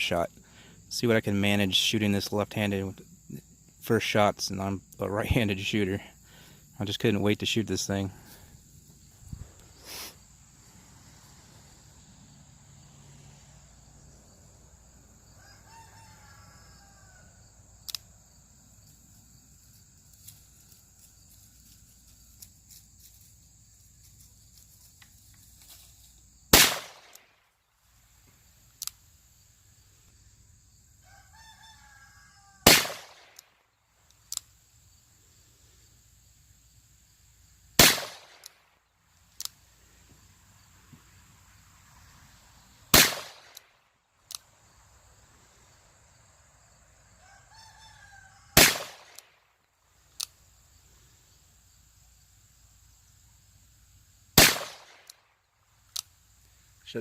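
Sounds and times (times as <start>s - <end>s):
high insect buzz: 7.4s - 26.6s
rooster crowing: 15.2s - 17.6s, 31.0s - 32.7s, 47.0s - 49.2s
revolver shots: 42.9s - 43.6s, 48.6s - 49.2s.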